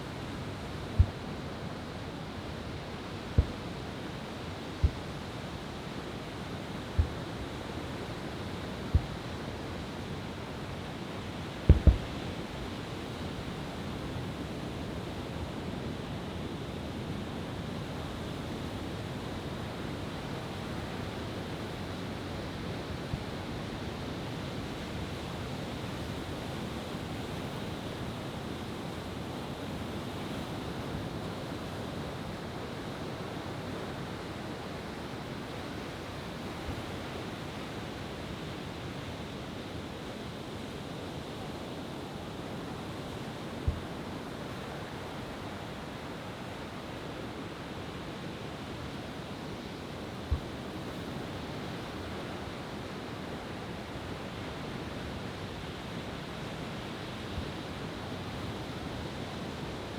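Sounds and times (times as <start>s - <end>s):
sharp low thumps: 11.7s - 12.0s.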